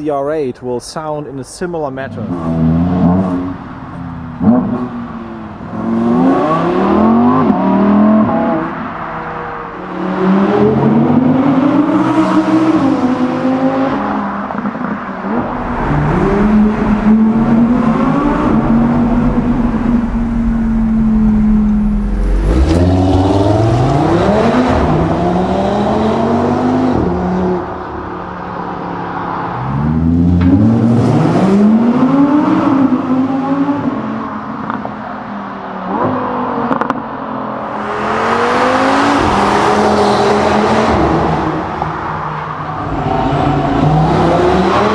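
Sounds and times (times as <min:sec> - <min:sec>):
car engine accelerating: 0:02.5 - 0:34.1.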